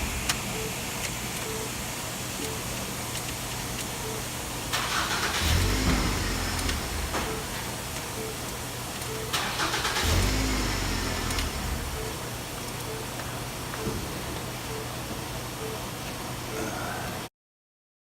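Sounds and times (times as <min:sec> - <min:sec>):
car engine cranking and starting: 0:04.7 - 0:07.9, 0:09.3 - 0:12.1.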